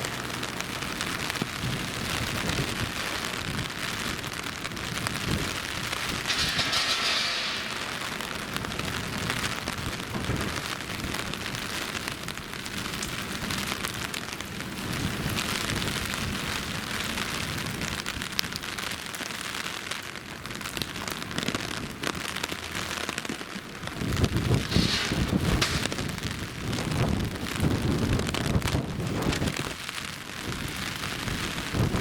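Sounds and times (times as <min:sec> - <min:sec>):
steady rain: 0:00.0 - 0:32.0
sharp drop hits: 0:06.2 - 0:09.2, 0:24.6 - 0:26.5.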